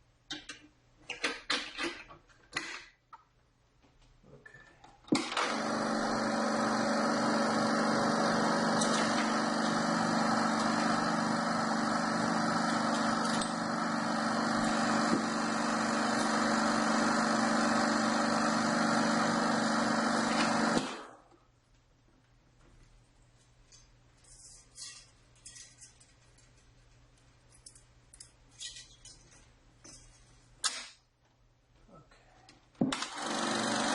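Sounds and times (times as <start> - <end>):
projector motor humming: 5.4 - 20.8, 33.0 - 33.9.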